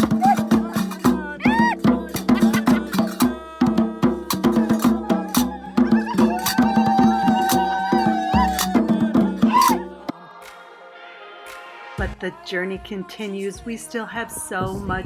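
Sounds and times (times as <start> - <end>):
quick percussion beat: 0.0 - 10.1.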